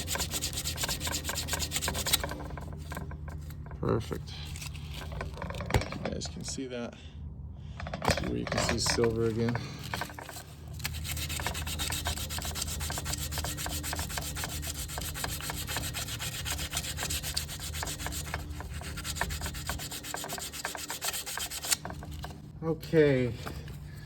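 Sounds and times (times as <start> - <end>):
sandpaper rubbing on metal: 0.0 - 3.0, 8.6 - 22.4.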